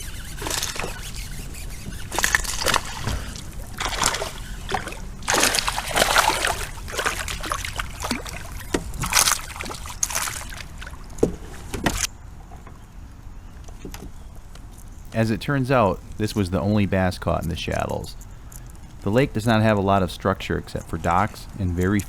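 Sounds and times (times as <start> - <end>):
water splashing around a kayak: 0.0 - 12.1.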